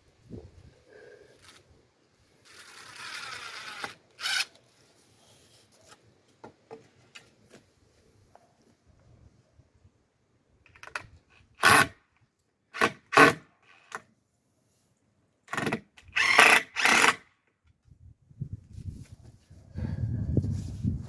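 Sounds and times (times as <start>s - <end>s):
power drill short bursts: 2.5s - 4.5s, 15.6s - 17.2s.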